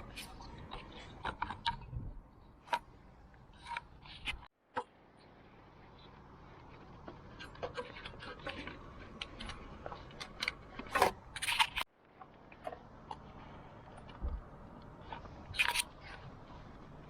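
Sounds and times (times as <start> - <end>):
clicks and scrapes of small objects: 0.0 - 4.9, 5.9 - 17.0
low steady hum: 0.0 - 17.0.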